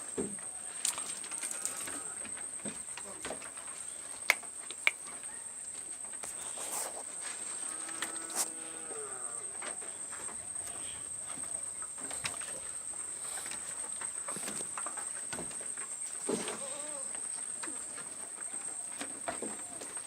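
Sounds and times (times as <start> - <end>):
goat bleating: 16.5 - 17.2.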